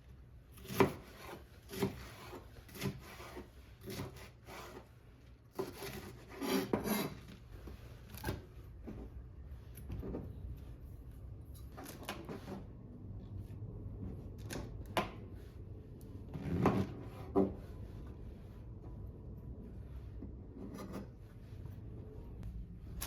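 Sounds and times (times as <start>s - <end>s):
low steady hum: 7.3s - 23.0s.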